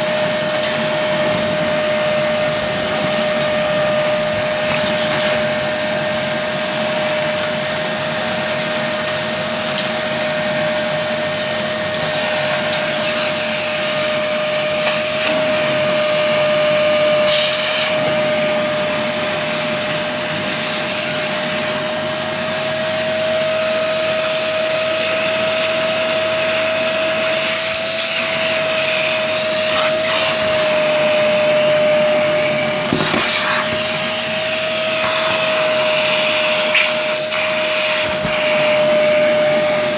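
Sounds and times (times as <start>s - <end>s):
vacuum cleaner whining: 0.0s - 39.9s
debris knocking in hose: 2.5s - 6.1s, 32.8s - 38.8s.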